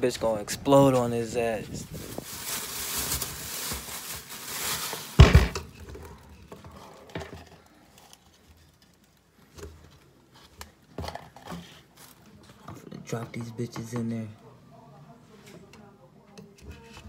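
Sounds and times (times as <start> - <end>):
loud thud: 5.2 - 5.7.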